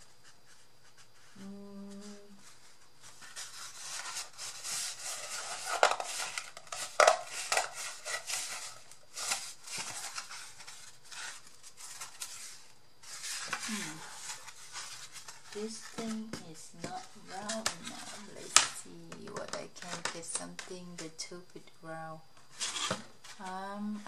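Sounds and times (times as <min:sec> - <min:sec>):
person humming: 0:01.3 - 0:02.4, 0:13.6 - 0:14.1
cardboard rustling and cracking: 0:02.4 - 0:21.1, 0:22.5 - 0:23.4.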